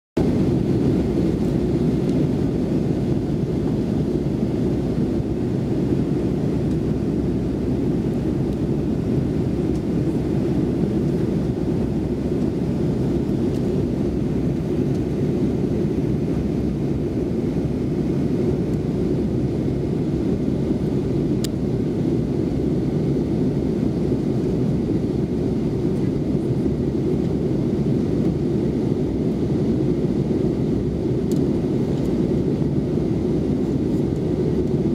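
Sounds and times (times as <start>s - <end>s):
jet engine cabin rumble: 0.2s - 34.9s.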